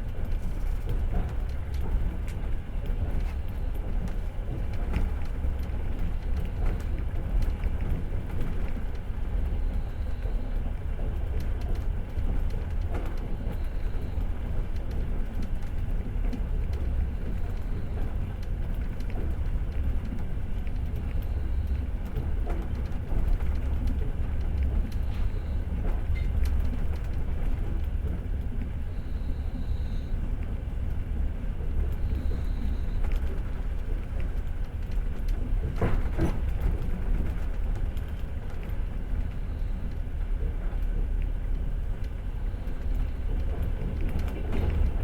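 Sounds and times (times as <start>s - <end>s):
train wheels rumbling on rails: 0.0s - 45.0s
faint clicks: 42.0s - 45.0s.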